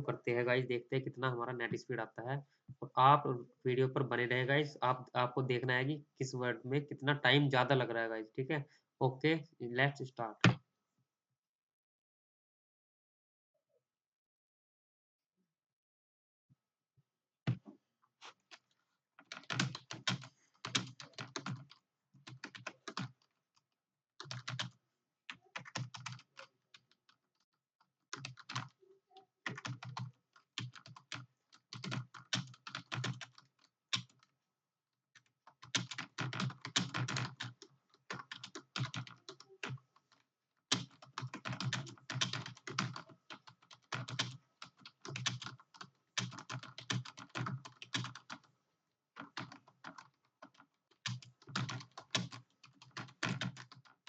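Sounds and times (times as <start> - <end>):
fast typing on keyboard: 19.2 - 23.3, 24.2 - 27.4, 28.1 - 28.8, 29.4 - 34.3, 35.5 - 48.5, 49.2 - 54.0.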